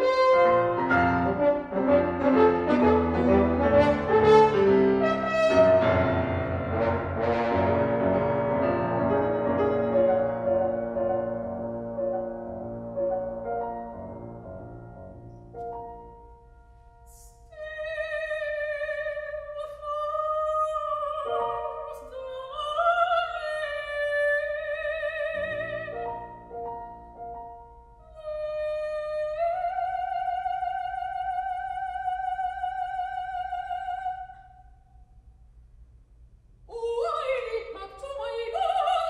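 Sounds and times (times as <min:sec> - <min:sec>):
piano chords: 0:00.0 - 0:17.1
soprano singing with vibrato: 0:17.1 - 0:26.5, 0:28.0 - 0:34.7, 0:36.7 - 0:39.0.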